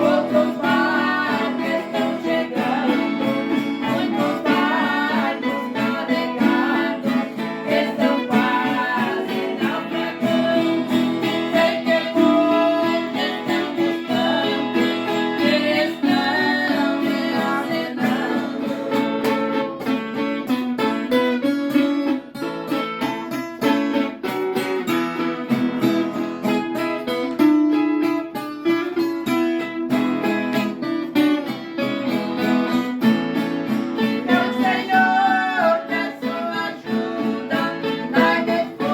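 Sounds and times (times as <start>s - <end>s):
person singing a praise song: 0.0s - 19.3s, 34.2s - 38.9s
acoustic guitar strumming: 0.0s - 38.9s.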